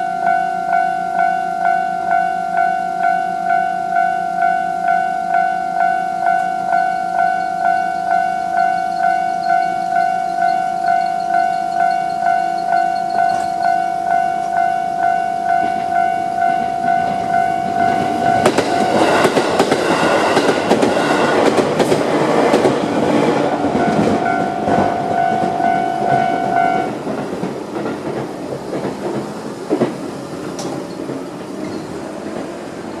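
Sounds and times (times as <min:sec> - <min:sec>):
crossing warning bell ringing: 0:00.0 - 0:28.8
train wheels clacking over rail joints: 0:08.8 - 0:14.7, 0:15.5 - 0:33.0.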